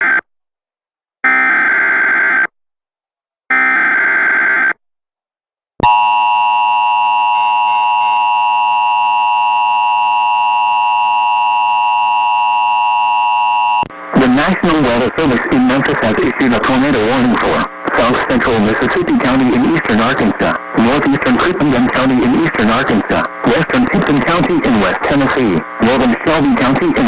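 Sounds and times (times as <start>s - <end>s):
steady two-tone alarm: 5.8s - 26.4s
digital header data bursts: 14.1s - 27.0s.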